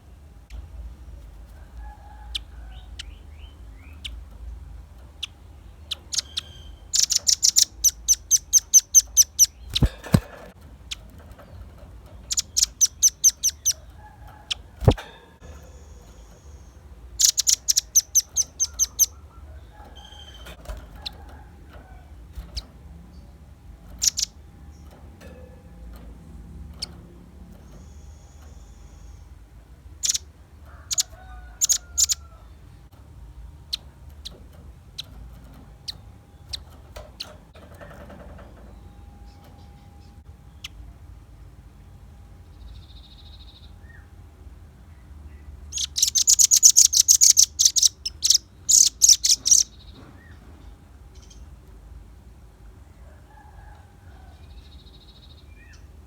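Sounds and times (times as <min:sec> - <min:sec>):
bird high sharp chips: 0:06.2 - 0:10.6.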